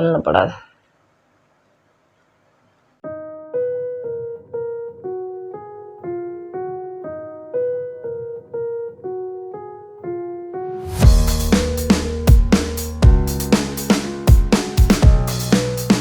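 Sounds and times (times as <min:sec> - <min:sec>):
piano keyboard melody: 0:03.0 - 0:16.0.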